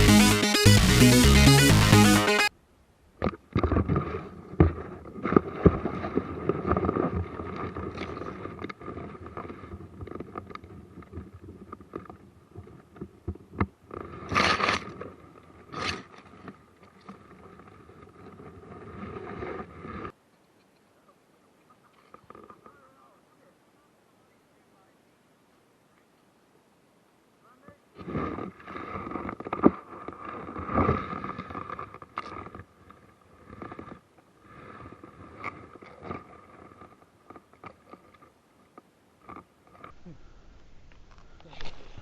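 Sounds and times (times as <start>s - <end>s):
rustling and scraping: 3.2s - 20.9s, 28.0s - 42.0s.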